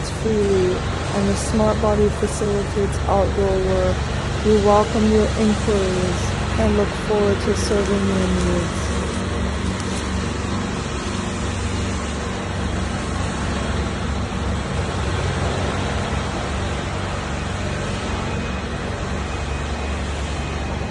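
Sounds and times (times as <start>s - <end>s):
diesel engine droning: 0.0s - 20.9s.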